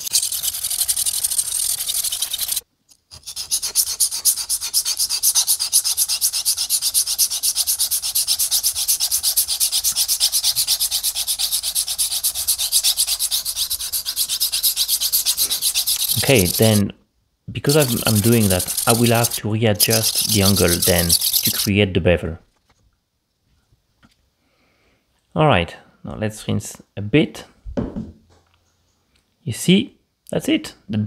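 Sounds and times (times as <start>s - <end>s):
razor blade rasping on sharpening plate: 0.0s - 2.6s, 3.2s - 16.8s, 17.7s - 21.7s.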